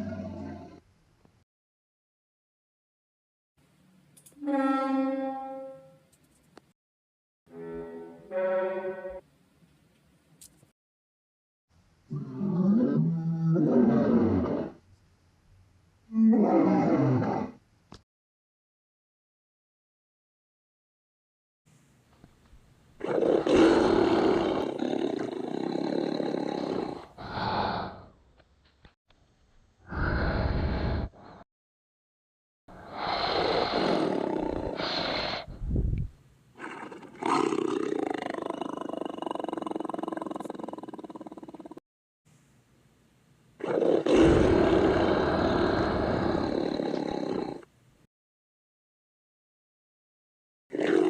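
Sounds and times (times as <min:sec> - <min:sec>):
dinosaur growl: 0:00.0 - 0:00.8, 0:12.1 - 0:14.8, 0:16.1 - 0:17.6, 0:23.0 - 0:28.1, 0:32.8 - 0:35.5, 0:36.6 - 0:41.8, 0:43.6 - 0:47.7
dinosaur roar: 0:00.0 - 0:00.8, 0:12.1 - 0:14.8, 0:16.1 - 0:17.6, 0:23.0 - 0:28.1, 0:32.8 - 0:35.5, 0:36.6 - 0:41.8, 0:43.6 - 0:47.7.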